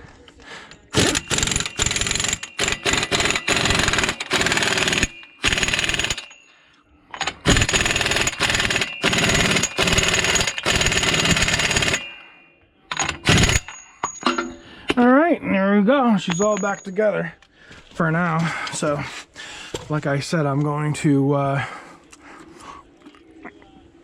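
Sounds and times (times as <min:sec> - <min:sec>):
impact wrench hammering: 0:00.8 - 0:06.4, 0:07.2 - 0:12.2, 0:12.9 - 0:14.5.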